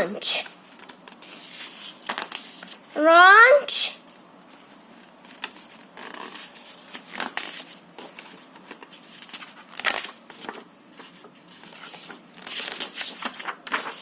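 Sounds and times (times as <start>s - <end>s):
paper pages rustling: 0.7s - 3.0s, 4.5s - 14.0s.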